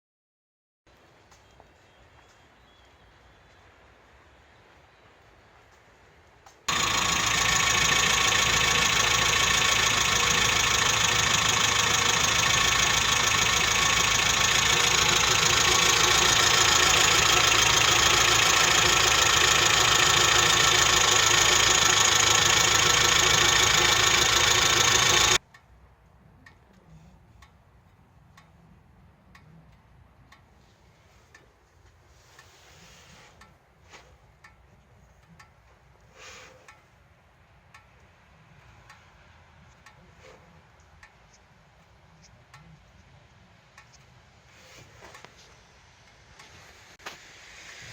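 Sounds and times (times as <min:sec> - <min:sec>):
car engine running: 0:06.7 - 0:25.4
faint ticks: 0:33.3 - 0:37.0, 0:37.6 - 0:44.2.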